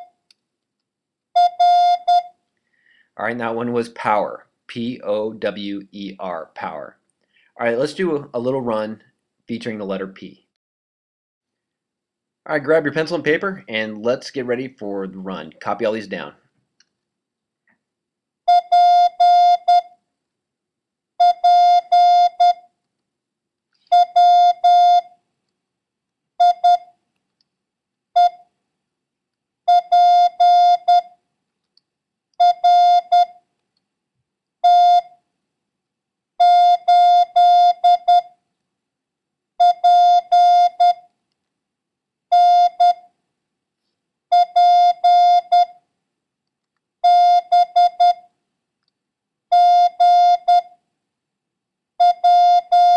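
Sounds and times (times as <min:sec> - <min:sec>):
morse code beeps: 0:52.0 - 0:52.9.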